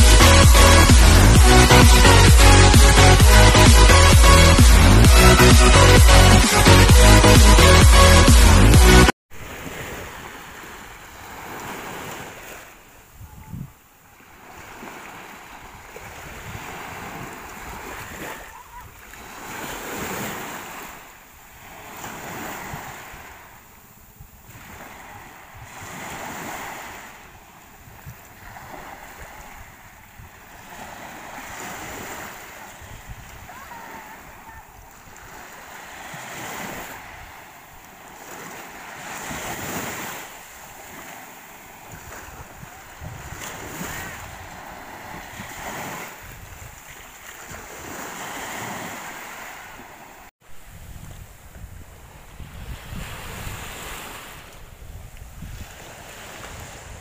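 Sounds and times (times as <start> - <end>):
sea waves breaking on shore: 0.0 - 57.0
wind rumbling on microphone: 13.0 - 13.8, 15.5 - 19.2, 21.5 - 49.0, 49.6 - 57.0.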